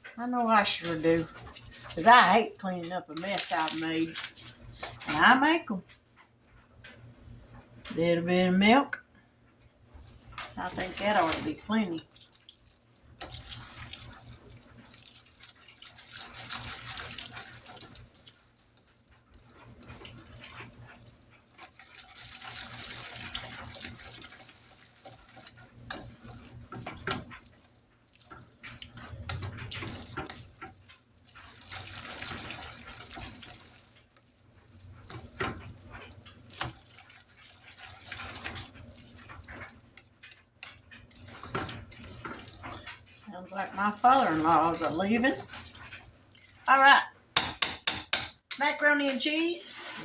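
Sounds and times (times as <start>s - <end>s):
wet sloshing stirring: 0.0s - 47.1s, 48.4s - 50.0s
spoon knocking against pot: 47.4s - 48.6s.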